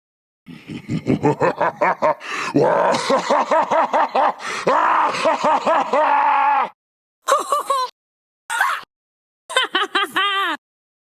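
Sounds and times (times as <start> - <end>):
evil laughter: 0.5 - 7.9, 9.5 - 10.6.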